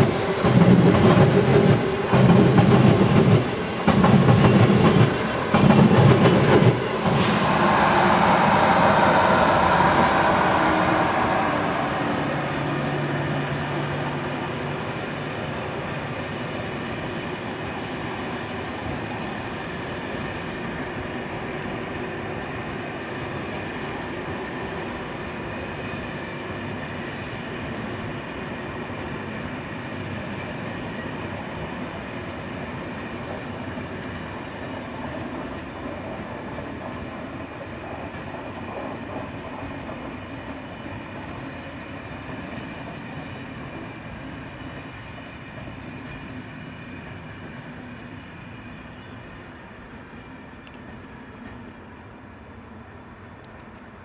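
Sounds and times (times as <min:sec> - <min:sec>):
train rumbling on rails: 0:00.0 - 0:54.0.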